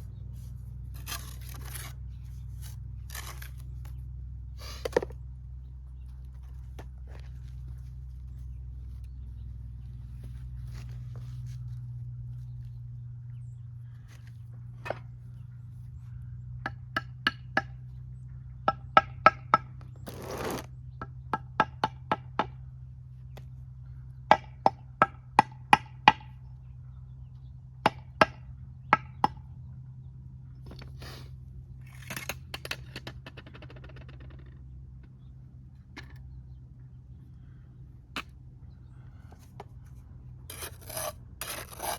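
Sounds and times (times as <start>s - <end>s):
low hum: 0.0s - 16.9s, 28.4s - 41.9s
mortar scraping: 0.6s - 4.0s, 20.0s - 20.7s, 40.5s - 41.9s.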